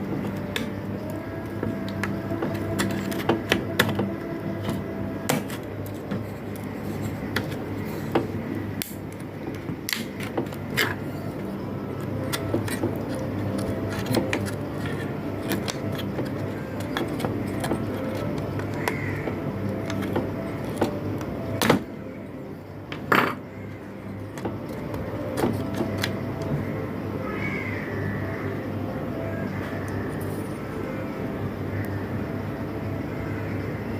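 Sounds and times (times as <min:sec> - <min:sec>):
steady hum: 0:00.0 - 0:33.9.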